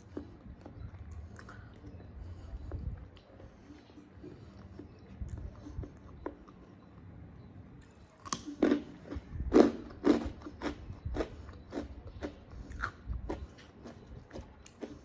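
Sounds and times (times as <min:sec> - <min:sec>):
person chewing food: 0:00.0 - 0:07.1, 0:07.8 - 0:15.0.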